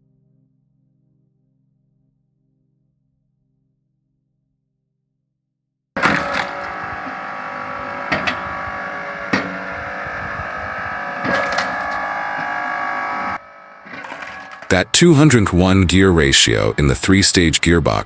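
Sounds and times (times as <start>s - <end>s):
wood cracking and splintering: 6.0s - 8.9s
log splitter running: 6.0s - 17.5s.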